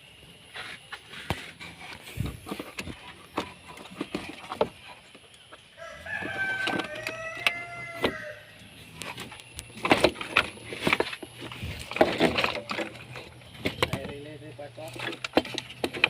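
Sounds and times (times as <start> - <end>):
rooster crowing: 5.8 - 8.6.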